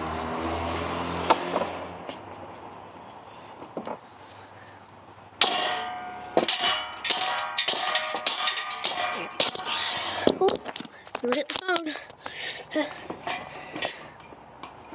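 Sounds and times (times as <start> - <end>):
loud ringing metal strikes: 5.4 - 10.0.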